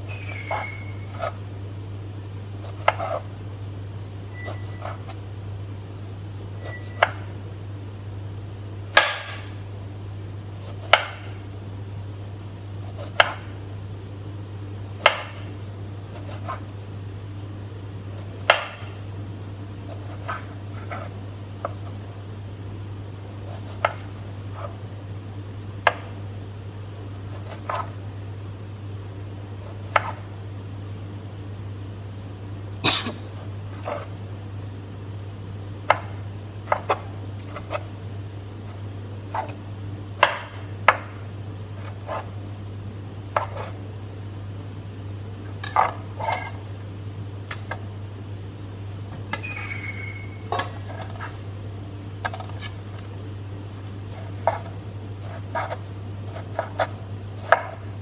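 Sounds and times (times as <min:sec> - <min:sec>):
steady low hum: 0:00.0 - 0:58.0
knife chopping on cutting board: 0:02.5 - 0:03.3, 0:04.2 - 0:05.2, 0:06.4 - 0:07.4, 0:08.9 - 0:09.5, 0:10.5 - 0:11.4, 0:12.8 - 0:13.6, 0:14.8 - 0:16.8, 0:18.0 - 0:19.0, 0:19.7 - 0:22.2, 0:23.2 - 0:24.8, 0:25.8 - 0:26.1, 0:27.0 - 0:28.0, 0:29.2 - 0:30.3, 0:35.8 - 0:37.9, 0:38.6 - 0:39.6, 0:40.2 - 0:42.4, 0:43.3 - 0:43.9, 0:54.1 - 0:57.9.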